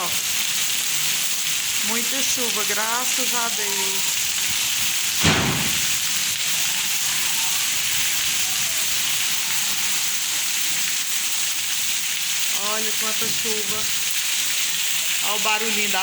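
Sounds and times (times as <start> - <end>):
heavy rain falling: 0.0 - 16.0
short thump: 5.2 - 6.0.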